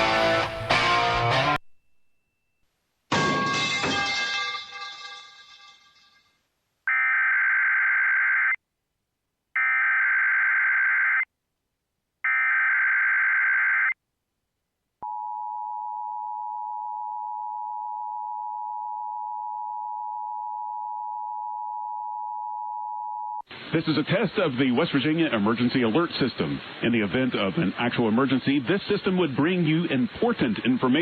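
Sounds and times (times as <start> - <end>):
station music: 0.0 - 1.7.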